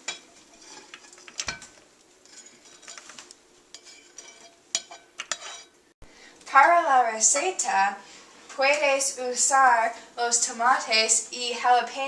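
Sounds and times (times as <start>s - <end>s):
utensil clinking and scraping pot: 0.0s - 5.8s.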